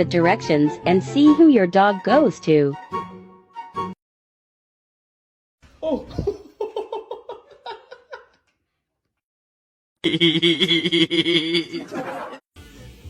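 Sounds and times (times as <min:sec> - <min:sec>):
person laughing: 0:05.8 - 0:08.4, 0:10.0 - 0:12.4.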